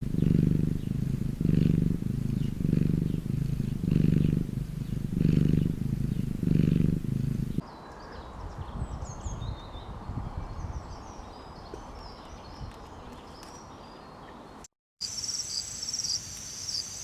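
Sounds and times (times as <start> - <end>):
cat purring: 0.0 - 7.6
low rustling hiss: 0.0 - 8.1
birds chirping: 0.0 - 17.0.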